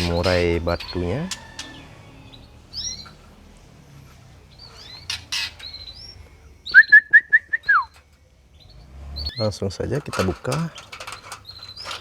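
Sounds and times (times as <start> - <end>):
songbirds chirping: 0.0 - 12.0
bird whistled notes: 5.8 - 7.9.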